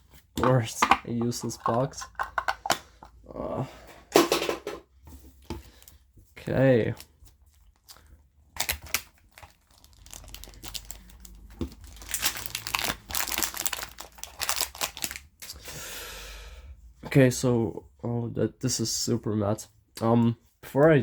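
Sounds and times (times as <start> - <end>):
crinkly wrapping being crumpled and torn: 5.7 - 15.6.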